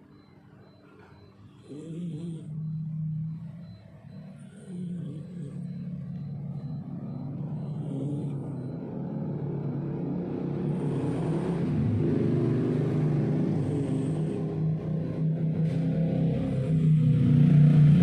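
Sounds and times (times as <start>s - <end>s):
cat snoring: 1.2s - 18.0s
faint breaths: 12.9s - 14.8s.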